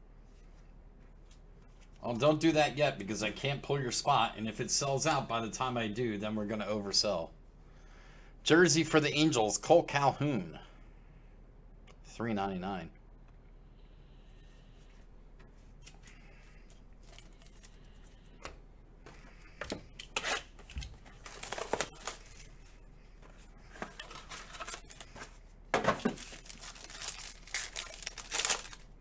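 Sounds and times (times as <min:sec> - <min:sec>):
plastic wrapping tearing and crinkling: 0:20.0 - 0:22.8, 0:23.7 - 0:29.0.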